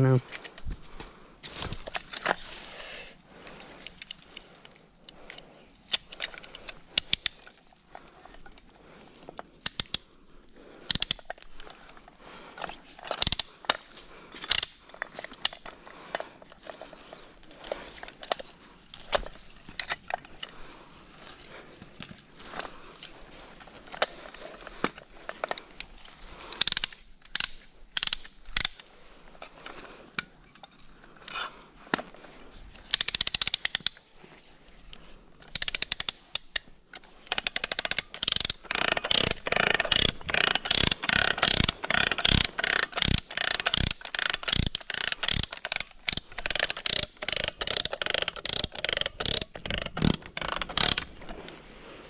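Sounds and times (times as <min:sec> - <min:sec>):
ratchet wrench clicking: 0:05.9 - 0:07.6, 0:09.6 - 0:10.1, 0:10.9 - 0:11.8, 0:13.0 - 0:13.8, 0:14.4 - 0:15.8, 0:26.5 - 0:28.8, 0:32.9 - 0:34.1, 0:35.5 - 0:36.7, 0:37.3 - 0:51.2.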